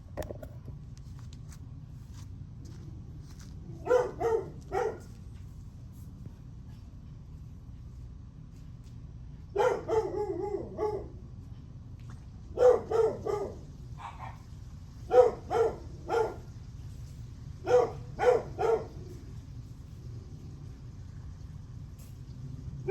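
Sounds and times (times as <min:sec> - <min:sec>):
low background rumble: 0:00.0 - 0:22.9
dog barking: 0:03.8 - 0:05.2, 0:09.5 - 0:11.2, 0:12.5 - 0:14.4, 0:15.0 - 0:16.5, 0:17.6 - 0:19.2.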